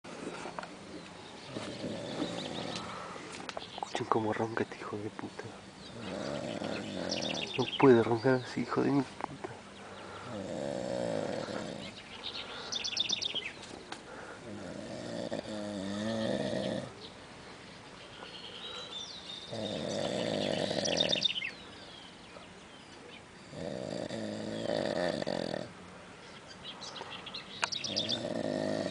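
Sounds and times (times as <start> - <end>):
man snoring: 1.5 - 3.2, 5.9 - 7.6, 10.2 - 11.9, 14.4 - 17.0, 19.5 - 21.3, 23.4 - 25.7, 27.9 - 28.9.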